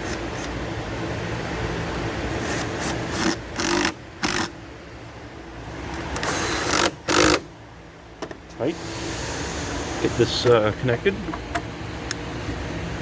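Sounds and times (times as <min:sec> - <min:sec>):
electric ratchet buzzing: 0:02.4 - 0:04.6, 0:06.2 - 0:07.5, 0:08.7 - 0:10.4.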